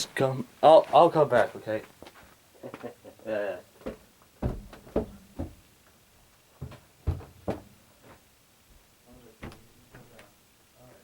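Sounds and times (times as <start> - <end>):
irregular thumps and knocks: 3.8 - 5.6, 6.6 - 8.2.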